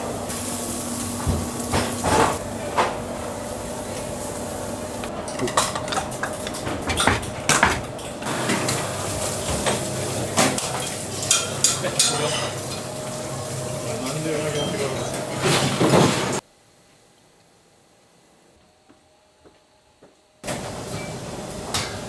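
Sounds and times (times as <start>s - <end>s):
utensils and dishes clattering: 5.0s - 16.4s.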